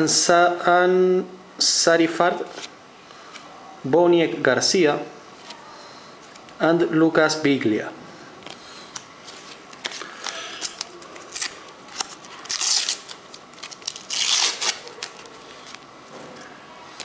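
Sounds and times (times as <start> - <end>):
paper packet rustling and crinkling: 9.3 - 15.8
paper packet ripping: 9.8 - 15.4.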